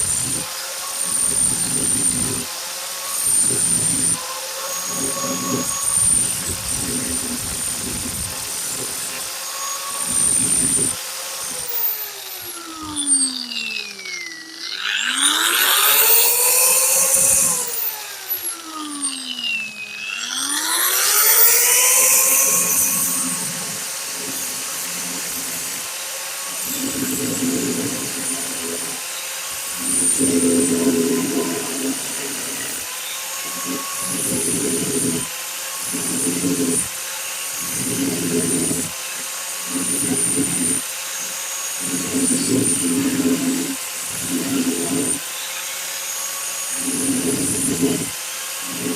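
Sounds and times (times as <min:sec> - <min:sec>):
drill bit grinding metal: 0:00.0 - 0:48.9
electric drill whining: 0:00.0 - 0:48.9.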